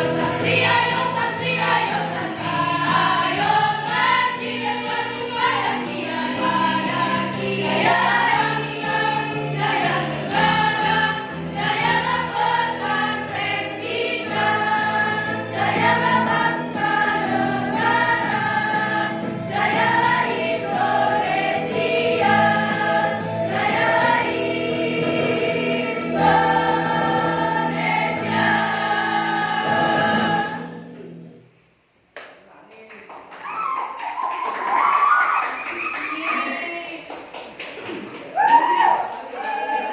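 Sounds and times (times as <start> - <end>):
girls' choir singing: 0.0 - 31.2.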